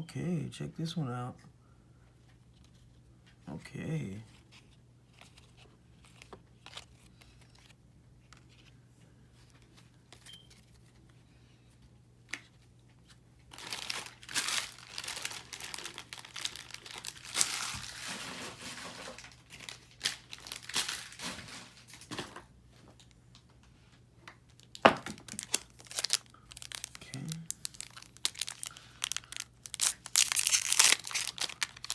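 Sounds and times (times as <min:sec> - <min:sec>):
wrapper tearing and crinkling: 0:13.5 - 0:22.4, 0:24.6 - 0:31.9.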